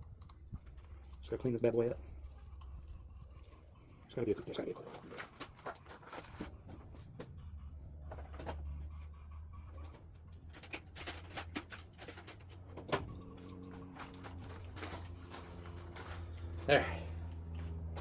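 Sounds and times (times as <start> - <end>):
steady low hum: 0.0 - 18.0
metal parts and tools clicking: 9.6 - 15.7.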